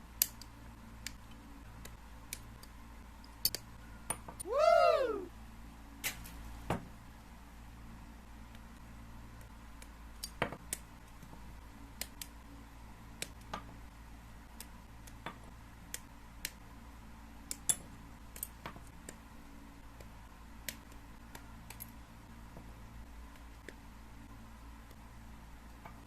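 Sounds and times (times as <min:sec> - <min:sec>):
low steady hum: 0:00.0 - 0:26.0
sharp plastic clicks and snips: 0:12.0 - 0:12.4.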